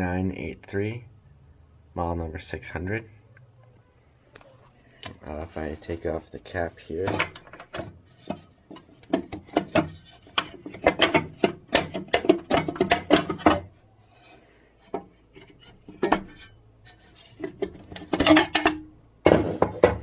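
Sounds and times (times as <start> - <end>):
clicks knocks and scraping of cover: 6.8 - 20.0.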